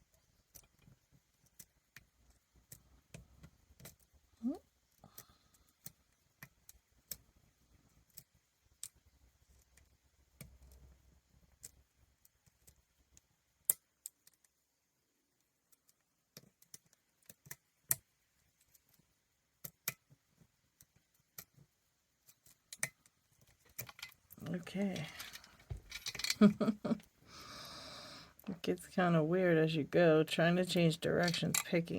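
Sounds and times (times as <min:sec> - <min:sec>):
lock pick clicking and scraping: 0:15.7 - 0:19.0, 0:22.2 - 0:24.4, 0:25.0 - 0:26.4.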